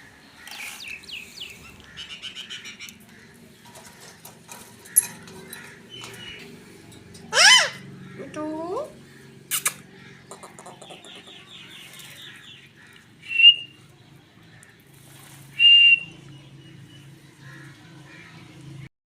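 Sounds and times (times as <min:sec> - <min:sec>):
parrot loud whistle-like calls: 0:07.3 - 0:07.8, 0:13.2 - 0:13.7, 0:15.6 - 0:16.1.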